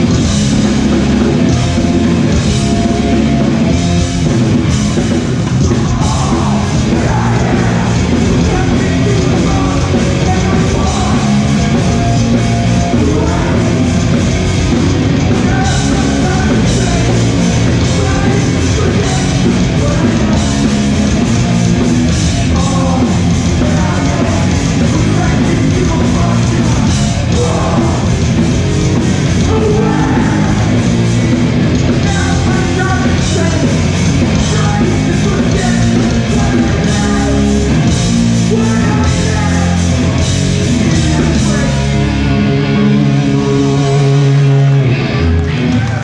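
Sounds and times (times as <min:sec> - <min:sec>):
pounding drums: 0:00.0 - 0:41.9
bass guitar: 0:00.0 - 0:46.0
distorted guitars: 0:00.0 - 0:46.0
shouted vocals: 0:05.6 - 0:11.6, 0:29.3 - 0:31.3.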